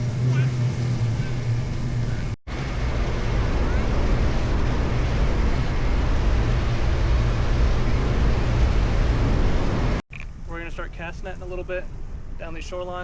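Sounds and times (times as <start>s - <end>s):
motorboat engine rumbling: 0.0s - 10.0s
water rushing: 0.0s - 10.0s
wind: 0.0s - 13.0s.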